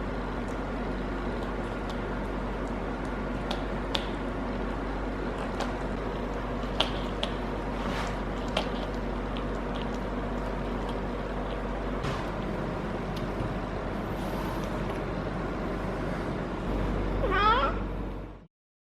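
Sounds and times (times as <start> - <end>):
background rumble with low hum: 0.0 - 18.5
cat crying: 17.2 - 17.9.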